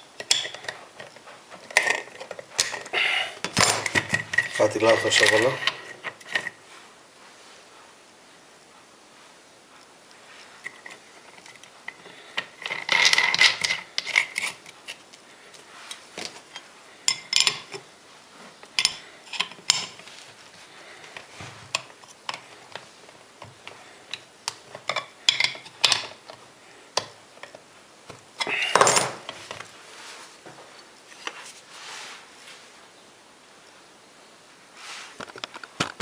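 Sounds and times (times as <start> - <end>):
metal parts clinking: 3.5 - 6.5, 12.4 - 15.0.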